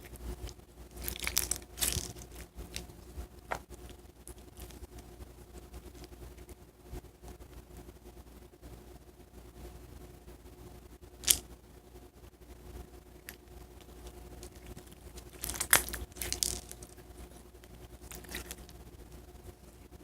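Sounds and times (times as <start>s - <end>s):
slime popping: 1.0s - 2.8s, 14.5s - 16.9s
slime sticky clicks and crackles: 1.0s - 2.9s, 11.2s - 11.4s, 13.3s - 17.0s.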